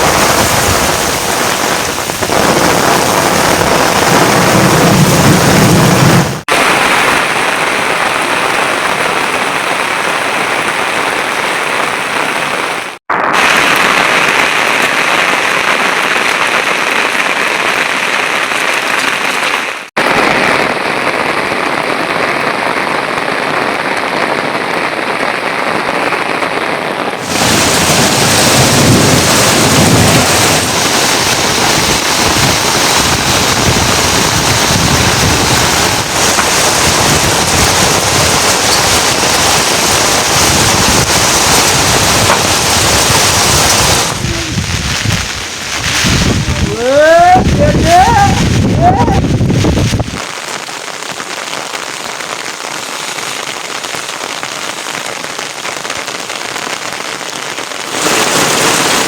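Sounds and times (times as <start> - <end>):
steady rain hiss: 0.0 - 59.0
deep rushing noise: 41.6 - 50.2.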